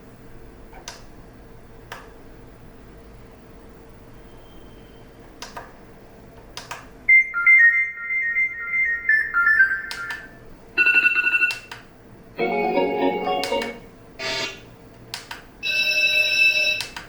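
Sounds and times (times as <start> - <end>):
musical alarm snippet: 7.1 - 11.4
bright electronic tone: 7.1 - 11.6
electronic ringtone melody: 7.1 - 11.6, 12.4 - 14.6.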